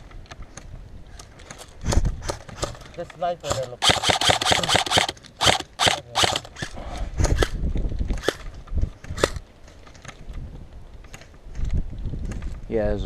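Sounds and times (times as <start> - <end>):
airsoft guns firing: 3.5 - 6.7.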